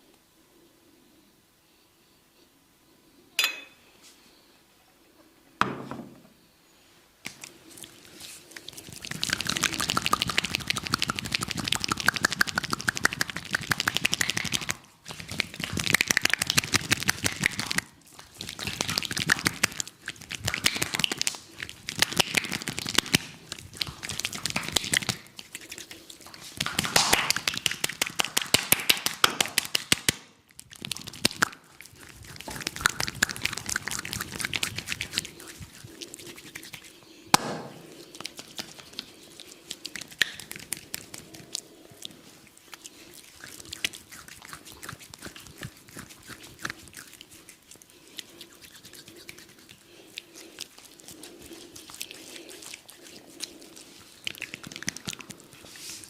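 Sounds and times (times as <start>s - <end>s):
thump: 5.6s - 6.2s
hands tapping and slapping: 9.3s - 17.9s, 20.3s - 25.2s, 26.6s - 30.3s, 37.3s - 39.1s.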